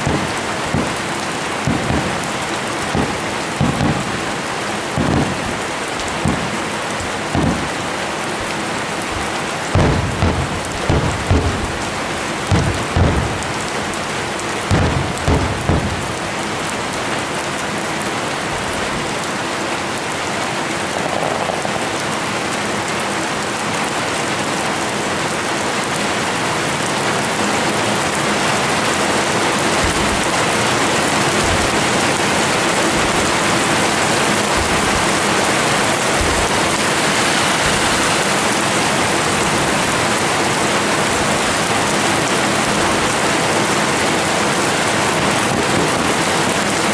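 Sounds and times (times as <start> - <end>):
low thuds: 0.0 - 7.9, 9.1 - 16.3, 29.8 - 35.5, 36.1 - 36.9
firework booms: 0.0 - 17.1, 28.2 - 41.6
firework crackling hiss: 0.0 - 17.1, 20.0 - 22.6, 27.5 - 43.8.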